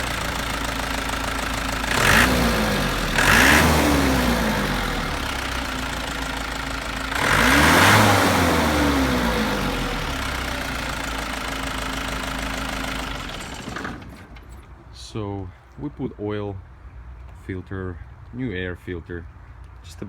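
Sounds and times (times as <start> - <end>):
diesel engine revving and idling: 0.0 - 15.4.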